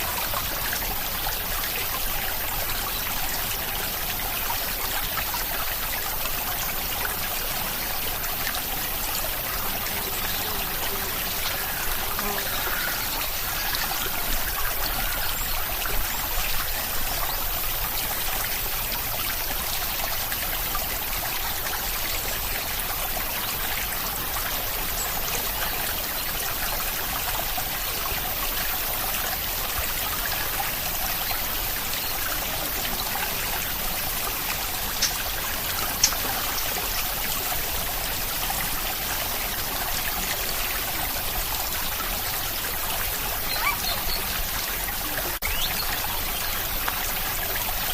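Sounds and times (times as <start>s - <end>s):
steady rain hiss: 0.0s - 47.9s.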